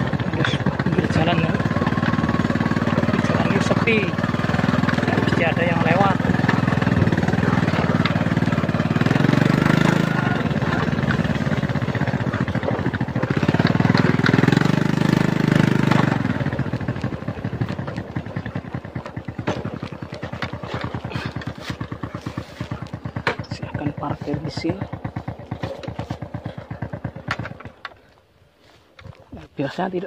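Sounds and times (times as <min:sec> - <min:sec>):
small motorcycle engine running: 0:00.0 - 0:30.0.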